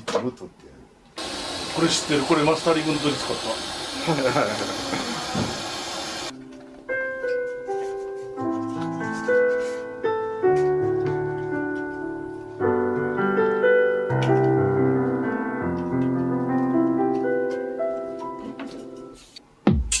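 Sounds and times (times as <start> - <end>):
slow piano chords: 6.3 - 19.2.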